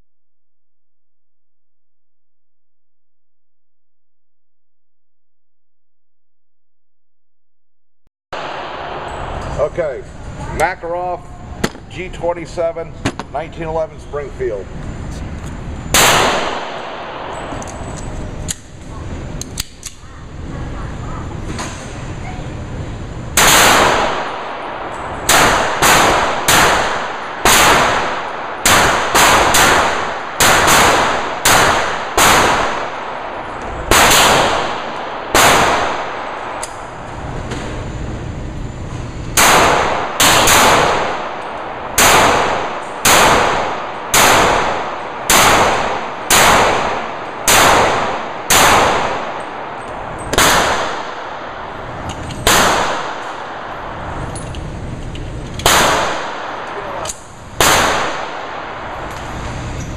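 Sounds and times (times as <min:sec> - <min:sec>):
pistol shots: 0:08.4 - 0:09.4, 0:15.9 - 0:18.8, 0:23.3 - 0:37.0, 0:39.3 - 0:54.4, 0:55.6 - 0:59.1.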